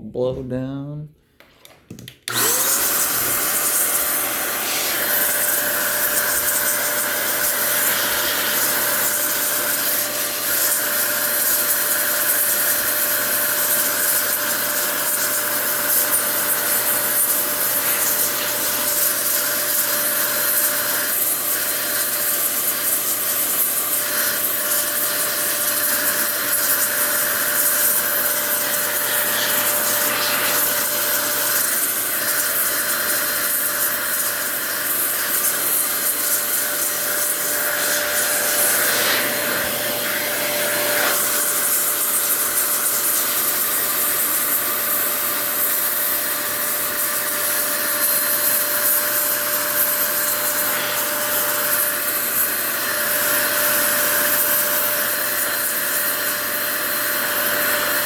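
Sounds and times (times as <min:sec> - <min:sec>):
electric air blower whining: 0:02.3 - 0:58.0
air stream hiss: 0:25.5 - 0:43.2.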